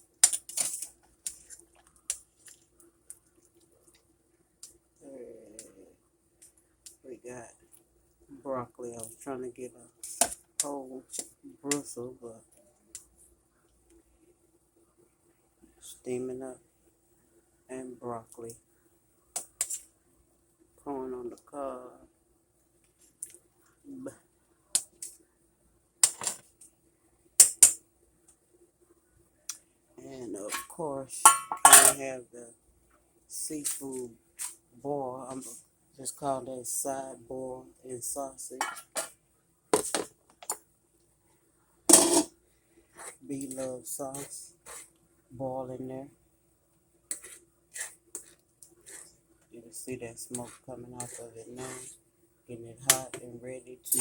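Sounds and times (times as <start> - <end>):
faint steady hum: 0.0 - 54.0
objects clicking and tapping: 26.0 - 26.6, 27.4 - 27.8.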